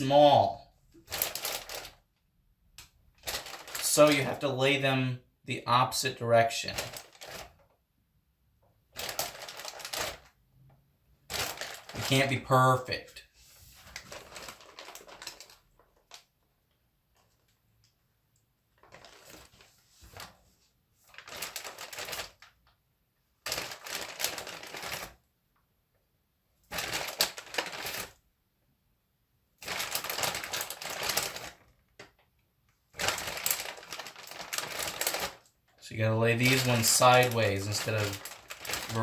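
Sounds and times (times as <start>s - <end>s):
frozen tater tots clattering: 36.3s - 39.0s.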